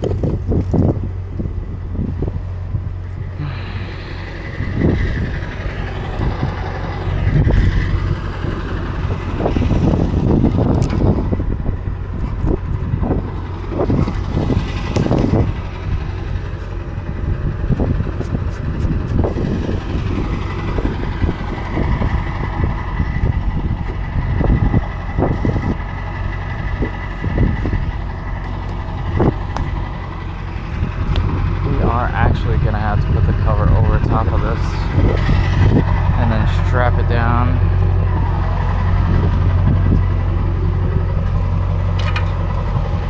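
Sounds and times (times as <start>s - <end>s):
knocks and clunks: 0.0s - 1.1s, 6.1s - 31.6s, 41.2s - 43.0s
truck engine running: 0.0s - 43.0s.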